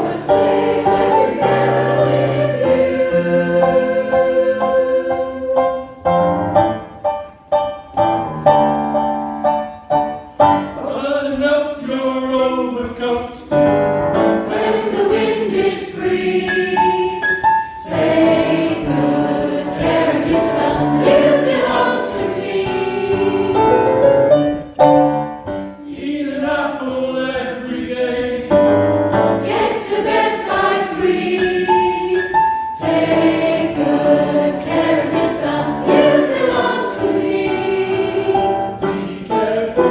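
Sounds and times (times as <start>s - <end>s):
choir singing: 0.0s - 6.5s, 14.2s - 24.3s, 25.3s - 39.9s.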